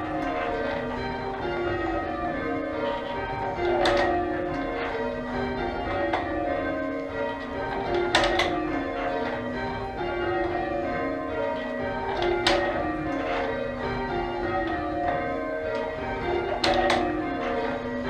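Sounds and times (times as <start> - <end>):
church bells ringing: 0.0 - 18.0.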